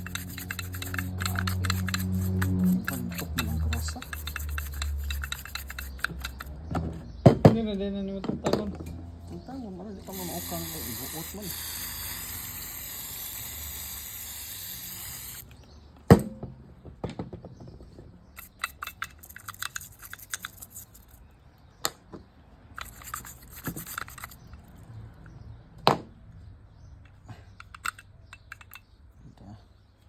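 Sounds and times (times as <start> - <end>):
small metal parts clinking: 0.0 - 6.6, 10.0 - 15.5, 18.3 - 21.3, 22.7 - 24.9, 27.0 - 29.0
spray hissing: 10.0 - 15.4.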